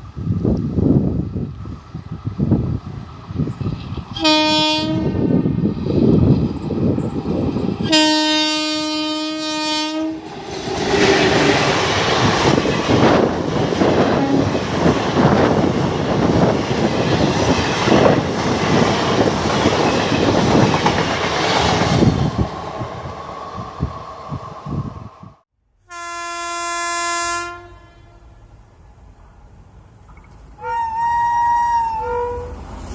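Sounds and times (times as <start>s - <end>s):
locomotive horn: 4.1s - 5.3s, 7.8s - 10.3s, 14.1s - 14.5s, 25.9s - 28.5s, 30.6s - 32.7s
train wheels clattering over rail joints: 10.3s - 22.4s.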